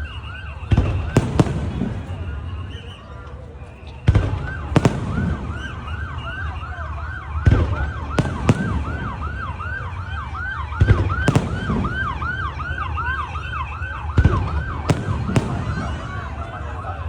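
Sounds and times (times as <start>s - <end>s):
fireworks bangs: 0.0s - 17.0s
siren yelping: 4.1s - 17.0s.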